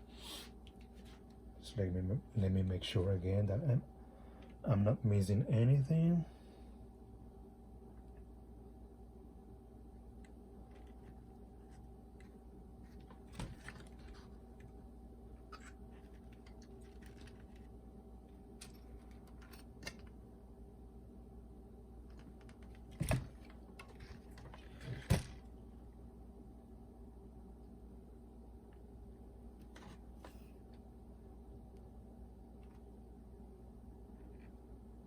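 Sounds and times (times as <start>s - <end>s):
faint steady hum: 0.0s - 35.0s.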